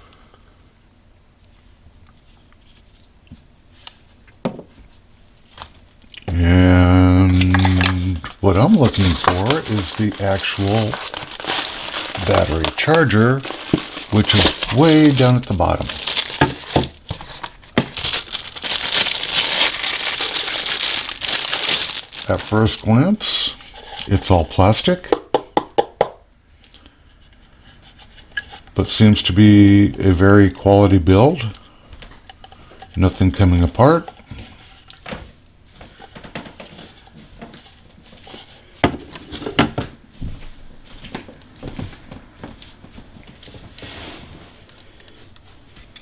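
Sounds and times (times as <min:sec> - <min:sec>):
plastic packaging crinkling: 0:07.2 - 0:22.9.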